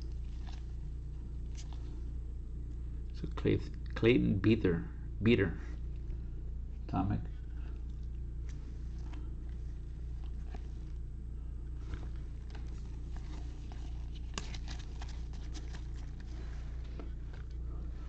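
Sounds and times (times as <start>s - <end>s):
steady low hum: 0.0s - 18.0s
trading cards clicking and rustling: 11.9s - 17.6s.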